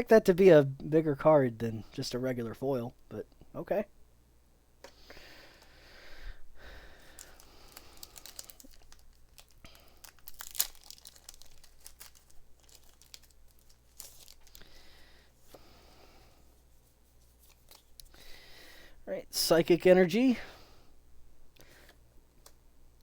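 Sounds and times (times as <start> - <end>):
foil wrapper tearing and crinkling: 7.1 - 14.8.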